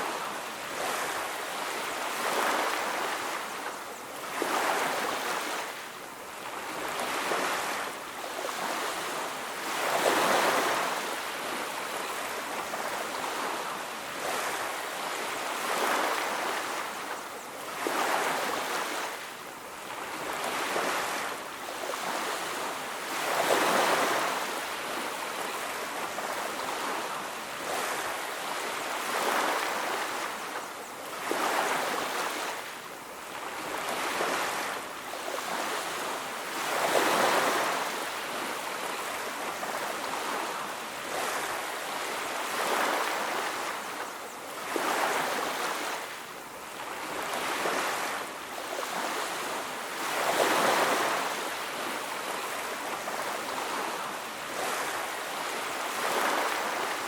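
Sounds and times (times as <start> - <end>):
waves breaking on beach: 0.0 - 57.0.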